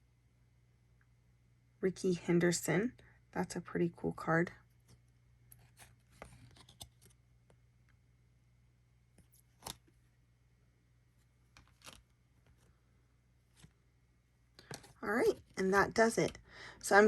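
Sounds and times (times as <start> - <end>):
trading cards rustling and sliding: 4.9 - 7.2, 9.2 - 10.0, 11.5 - 12.7.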